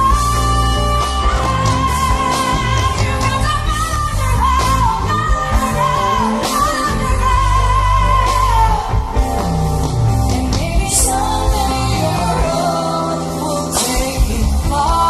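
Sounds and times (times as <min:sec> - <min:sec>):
pop band playing: 0:00.0 - 0:15.0.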